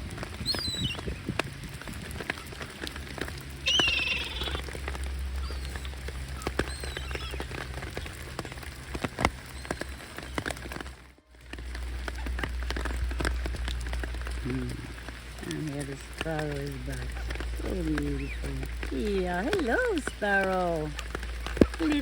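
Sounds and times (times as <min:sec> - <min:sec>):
rain pattering: 0:00.0 - 0:22.0
raindrops ticking: 0:00.0 - 0:22.0
bird call: 0:00.4 - 0:01.2, 0:03.6 - 0:08.6
faint bird chirps: 0:00.4 - 0:01.2, 0:03.6 - 0:04.6, 0:05.3 - 0:08.1.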